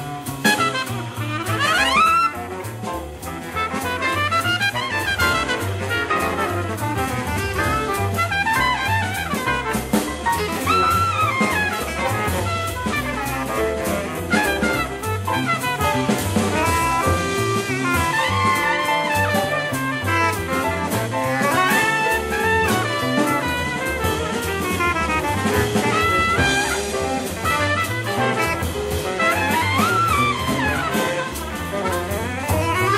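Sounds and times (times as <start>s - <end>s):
drum kit: 0.0s - 32.9s
jazz band playing: 0.0s - 32.9s
walking bass: 0.0s - 32.9s
horns playing melody: 0.2s - 32.9s.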